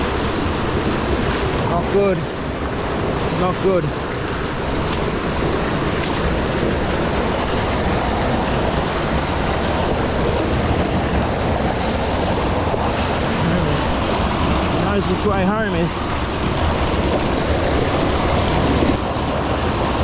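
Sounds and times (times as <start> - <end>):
water rushing through rapids: 0.0 - 20.0.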